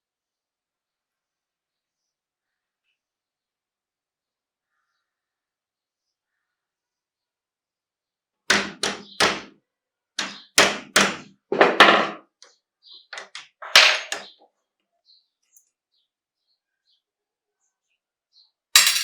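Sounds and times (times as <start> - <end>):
sharp metal knocks and taps: 8.5 - 9.5, 10.2 - 12.2, 13.2 - 14.3, 18.8 - 19.0.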